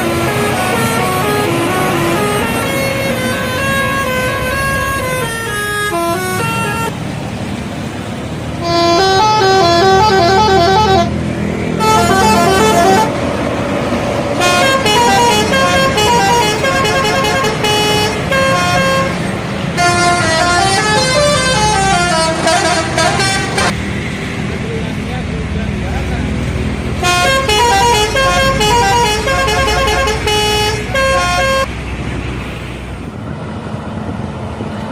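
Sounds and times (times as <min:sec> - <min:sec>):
melodic bus horn: 0:00.0 - 0:07.0, 0:08.6 - 0:23.8, 0:26.9 - 0:31.7
bus engine running: 0:00.0 - 0:34.9.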